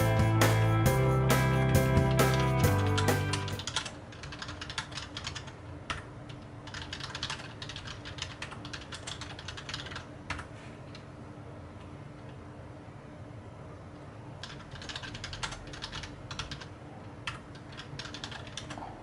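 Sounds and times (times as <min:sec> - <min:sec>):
intro music: 0:00.0 - 0:03.7
fast typing on keyboard: 0:02.0 - 0:10.5, 0:14.4 - 0:18.8.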